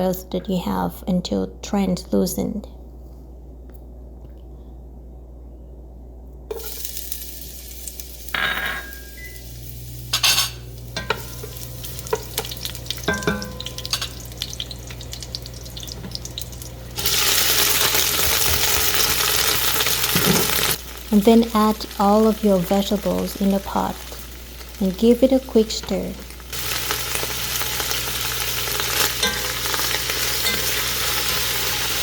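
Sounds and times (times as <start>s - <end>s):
garlic sizzling in hot oil: 6.5s - 32.0s.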